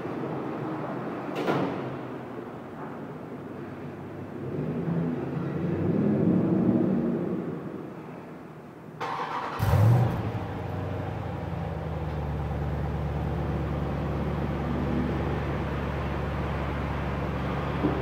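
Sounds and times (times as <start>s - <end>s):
car engine starting and idling: 9.0s - 18.0s.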